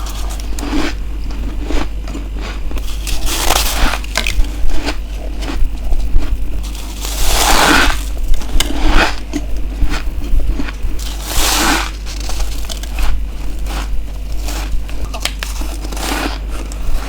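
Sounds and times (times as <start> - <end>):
ice being crunched: 0.0 - 5.6, 6.2 - 17.0.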